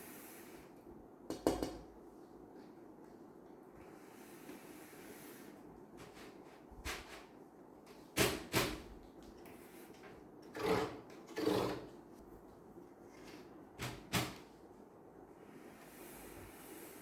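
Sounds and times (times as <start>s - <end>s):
hard objects knocking: 1.3s - 1.9s.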